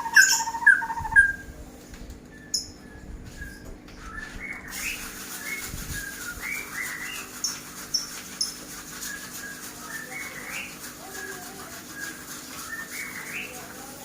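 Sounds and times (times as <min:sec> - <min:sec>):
sharp high bird chips: 0:00.0 - 0:01.4, 0:04.4 - 0:13.8
songbird singing: 0:00.0 - 0:01.5, 0:02.2 - 0:14.0.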